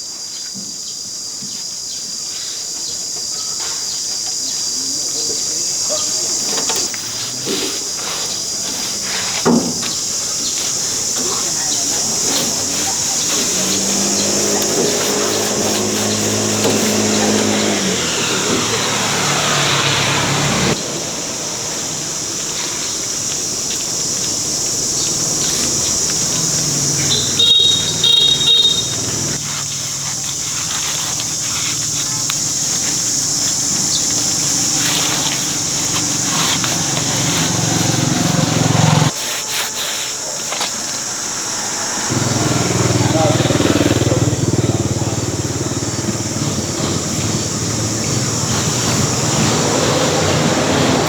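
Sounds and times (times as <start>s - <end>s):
vehicle engine running: 5.8s - 51.0s
short horn toots: 27.0s - 29.4s.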